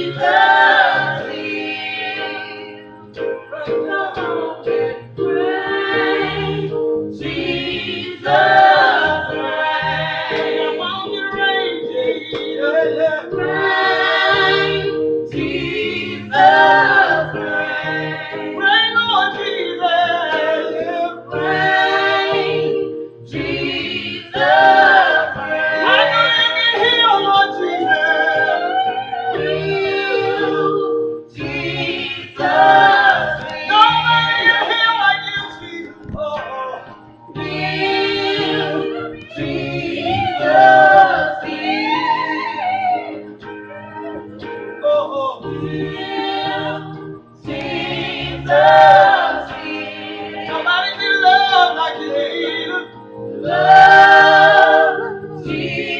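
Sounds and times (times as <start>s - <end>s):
gospel choir singing: 0.0s - 55.9s
sustained accompanying chords: 0.0s - 55.9s.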